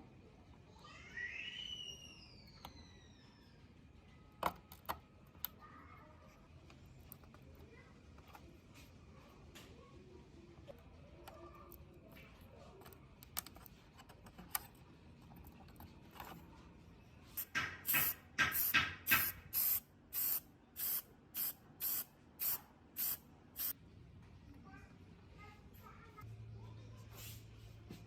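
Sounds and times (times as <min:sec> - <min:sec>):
short sprays: 0:17.4 - 0:23.7.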